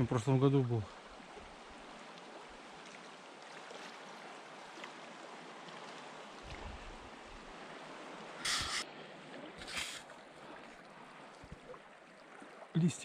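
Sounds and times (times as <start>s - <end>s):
river water rushing: 0.9s - 12.6s
loud hiss of noise: 8.4s - 8.8s.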